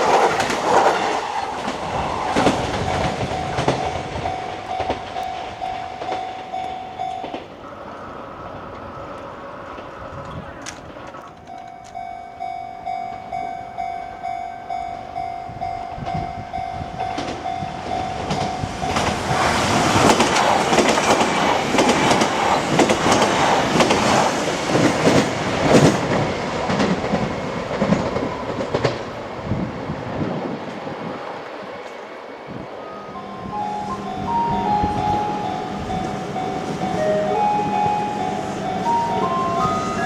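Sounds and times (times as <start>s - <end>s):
wheels clattering over rail joints: 0.0s - 12.5s, 16.0s - 29.9s
train passing with loud rush: 0.0s - 40.0s
level crossing bell ringing: 2.6s - 7.8s, 11.4s - 20.2s, 32.8s - 40.0s.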